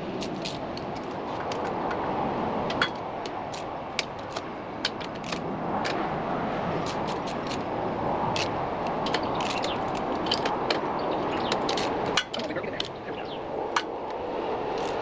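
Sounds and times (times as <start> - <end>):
hand tools clicking on metal: 8.3 - 13.0.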